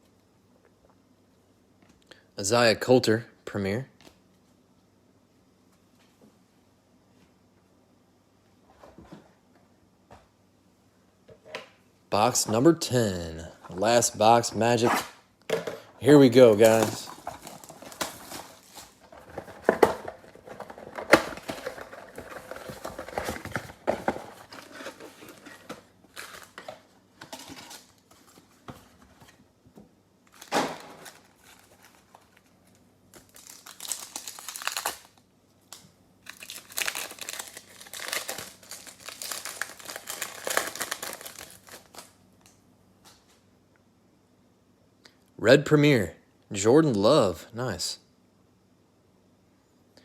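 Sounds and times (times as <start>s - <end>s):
plastic wrapping crinkling and tearing: 16.5s - 26.8s, 30.3s - 42.2s.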